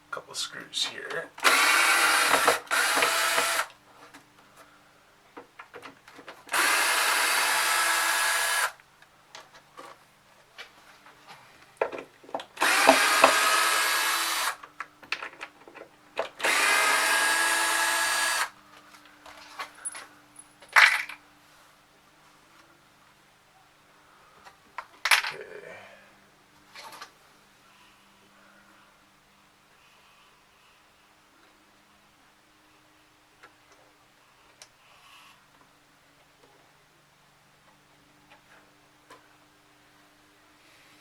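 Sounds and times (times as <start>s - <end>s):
drill click: 1.4s - 3.7s, 6.5s - 8.8s, 12.6s - 14.6s, 16.4s - 18.5s
power drill motor running: 1.4s - 3.7s, 6.5s - 8.8s, 12.6s - 14.6s, 16.4s - 18.6s.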